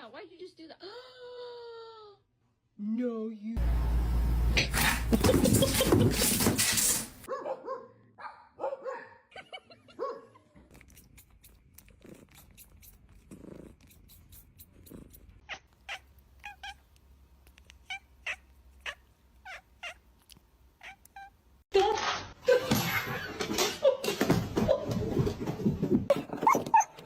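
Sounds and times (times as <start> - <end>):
cat purring: 10.7 - 16.8
cat meows and chirps: 15.5 - 16.8.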